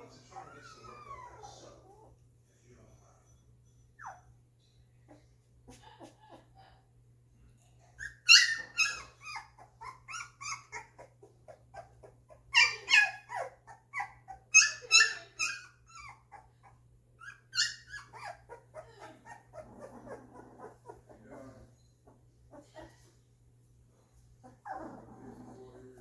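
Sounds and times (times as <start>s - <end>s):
puppies whimpering and squealing: 0.0s - 2.2s, 4.0s - 4.4s, 8.0s - 23.1s, 24.4s - 26.0s.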